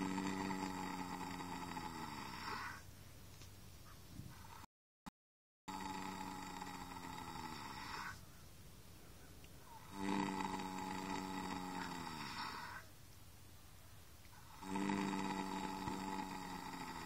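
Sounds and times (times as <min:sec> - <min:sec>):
horse snoring: 0:00.0 - 0:02.8, 0:05.7 - 0:08.2, 0:09.7 - 0:12.9, 0:14.4 - 0:17.0.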